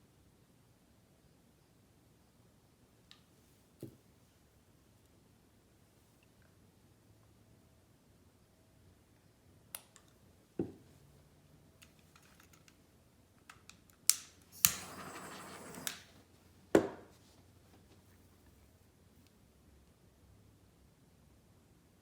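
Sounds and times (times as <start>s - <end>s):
painting supplies clicking and knocking: 11.8s - 12.8s
rough noise: 14.6s - 16.1s.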